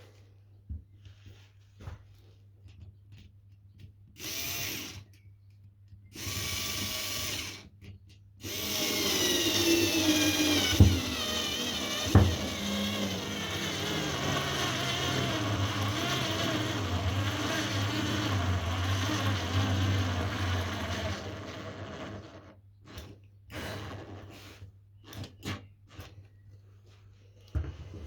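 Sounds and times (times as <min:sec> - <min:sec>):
cordless screwdriver straining: 0:08.4 - 0:24.3.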